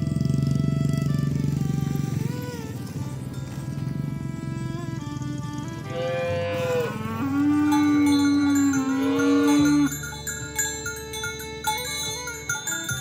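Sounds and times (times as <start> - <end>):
background music: 0.0 - 13.0
cow mooing: 5.8 - 10.0
chime-like notes: 6.7 - 13.0.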